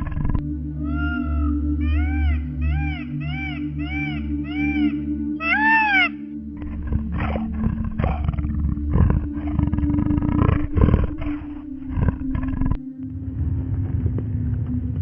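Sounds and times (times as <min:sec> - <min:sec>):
lion roaring: 0:00.0 - 0:01.3, 0:05.4 - 0:12.8.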